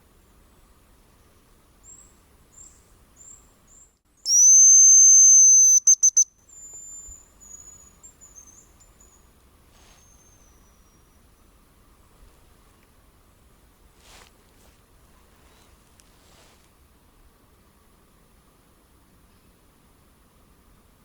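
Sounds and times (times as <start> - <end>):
bird lure whistle: 4.3 - 7.8
soft high thin whistles: 4.3 - 9.2, 9.8 - 11.3.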